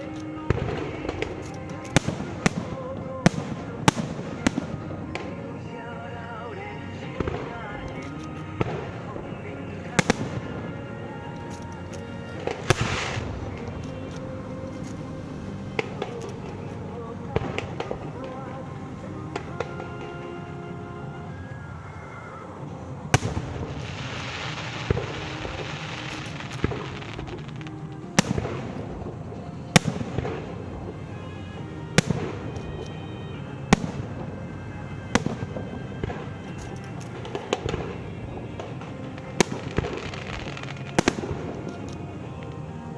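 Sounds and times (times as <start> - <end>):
fireworks popping and banging: 0.0 - 5.5, 7.1 - 15.0, 23.1 - 31.0, 31.9 - 33.0, 35.1 - 42.6
fireworks crackling: 0.0 - 20.8, 22.5 - 42.9
music: 0.0 - 42.9.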